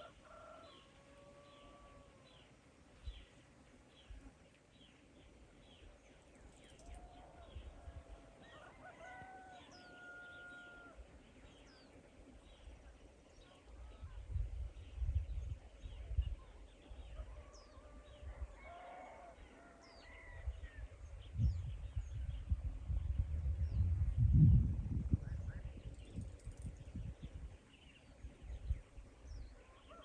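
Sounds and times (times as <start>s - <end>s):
small birds chirping: 2.2s - 7.8s, 25.5s - 30.0s
rooster crowing: 8.0s - 11.0s, 17.4s - 20.5s.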